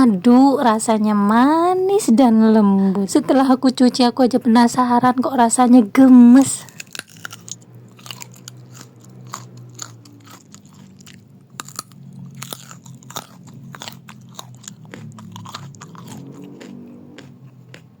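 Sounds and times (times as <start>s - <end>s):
person chewing: 6.6s - 18.0s.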